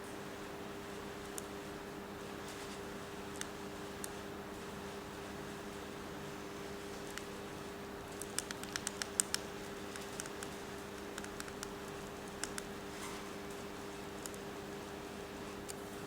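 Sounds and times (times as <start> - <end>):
faint steady hum: 0.0 - 16.0
small sharp clicks and taps: 8.2 - 12.7.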